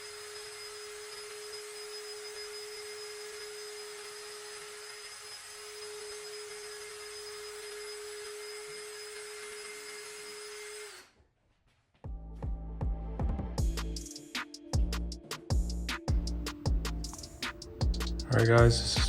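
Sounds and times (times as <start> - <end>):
power tool motor running: 0.0 - 11.2.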